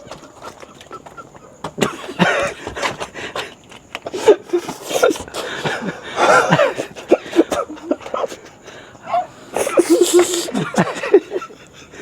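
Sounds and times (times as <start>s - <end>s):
person chewing: 9.6s - 10.7s.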